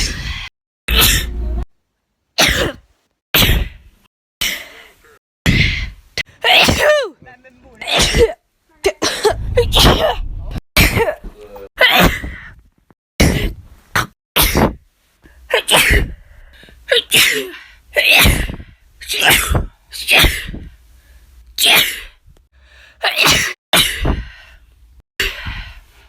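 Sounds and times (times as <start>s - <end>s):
woman sneezing: 2.4s - 2.8s, 6.4s - 8.4s, 16.9s - 18.5s, 23.0s - 23.6s.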